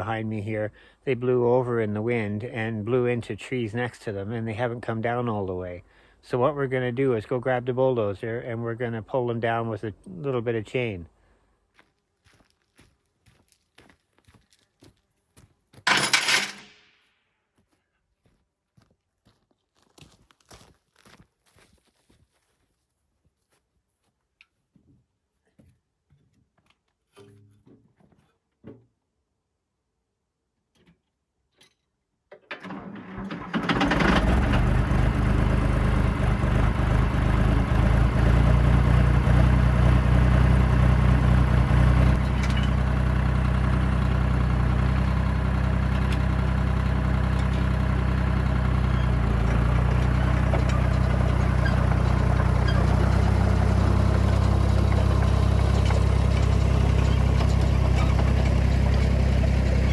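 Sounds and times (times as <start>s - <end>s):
diesel engine cranking and idling: 32.6s - 59.9s.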